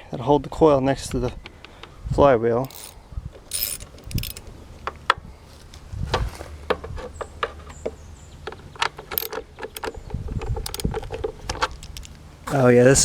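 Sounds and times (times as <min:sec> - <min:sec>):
metallic clicks of hand tools: 0:02.7 - 0:04.5, 0:08.8 - 0:12.2.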